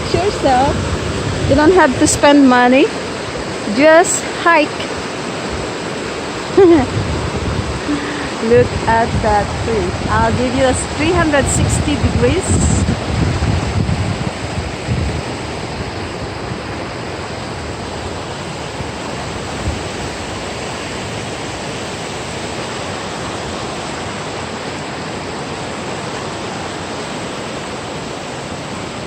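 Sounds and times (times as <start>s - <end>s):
river water rushing: 0.0s - 29.0s
wind rumble on microphone: 0.0s - 29.0s.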